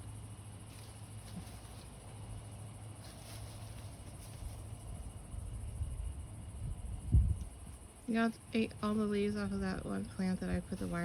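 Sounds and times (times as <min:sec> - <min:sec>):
crickets chirping: 0:00.0 - 0:11.0
faint scratches or ticks: 0:00.6 - 0:05.0
wind rumble on microphone: 0:04.2 - 0:11.0.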